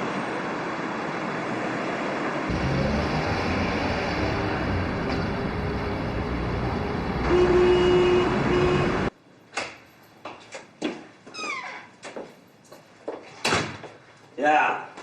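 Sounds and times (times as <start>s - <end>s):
vehicle traffic rumbling: 0.0s - 9.2s.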